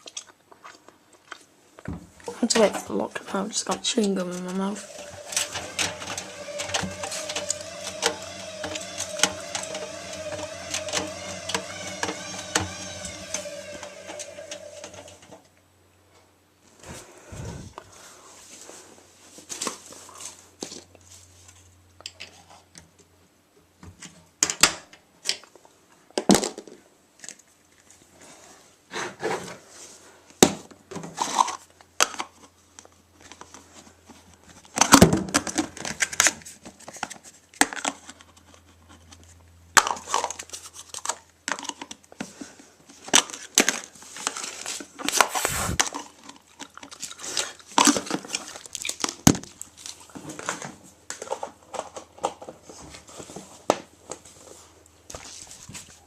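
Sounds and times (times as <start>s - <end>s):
washing machine motor whining: 3.6s - 15.4s, 45.2s - 45.8s.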